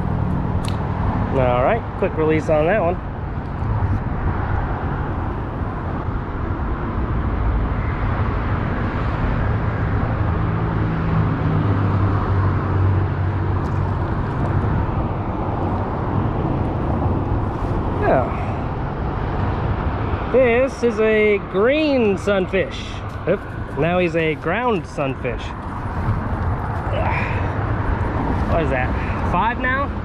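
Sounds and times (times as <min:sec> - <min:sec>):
highway traffic rumble: 0:00.0 - 0:30.0
heavy vehicle passing: 0:22.1 - 0:30.0.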